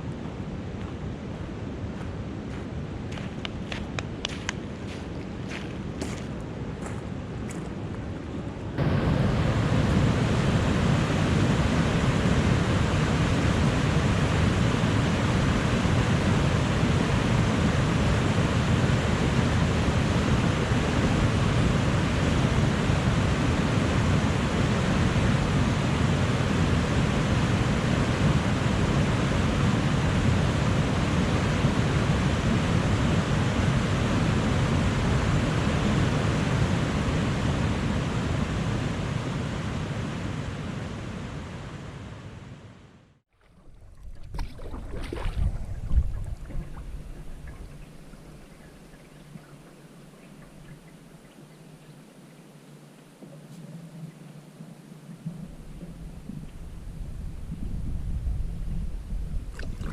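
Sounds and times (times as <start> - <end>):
river water rushing: 8.8 - 42.1, 43.5 - 56.8.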